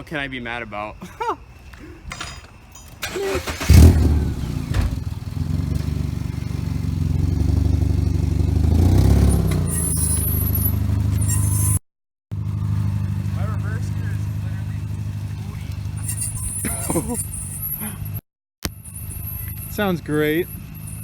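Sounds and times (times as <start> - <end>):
car engine starting and idling: 2.9 - 11.2, 12.3 - 18.0
faint high squeak: 9.4 - 11.8, 16.0 - 17.8, 18.8 - 21.0.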